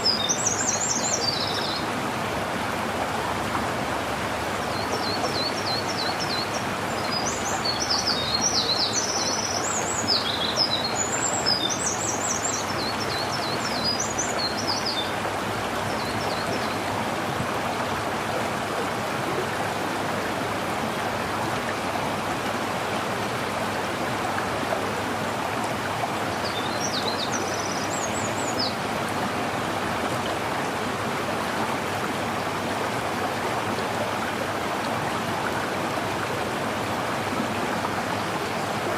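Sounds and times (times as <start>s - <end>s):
songbird singing: 0.0s - 1.9s, 4.7s - 15.2s
stream water rushing: 0.0s - 38.9s.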